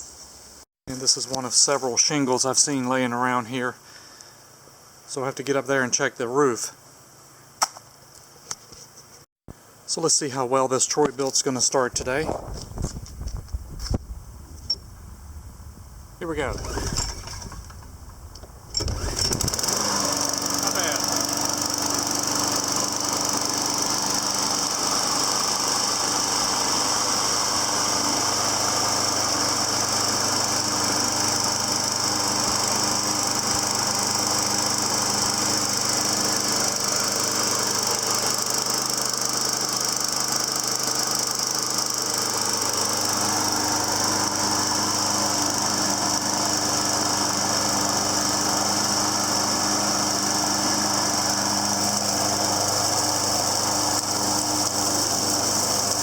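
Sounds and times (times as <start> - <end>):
lawn mower engine running: 11.9 - 56.0.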